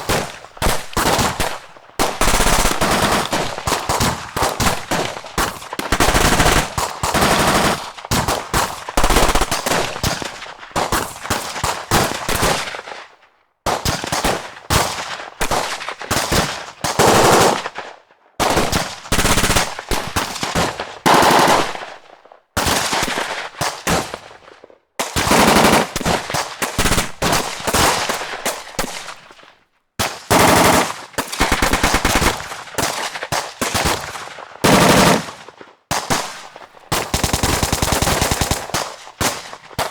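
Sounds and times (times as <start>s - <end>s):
automatic gunfire bursts: 0.0s - 11.4s, 14.1s - 17.8s, 18.4s - 23.3s, 25.0s - 29.1s, 30.0s - 39.9s.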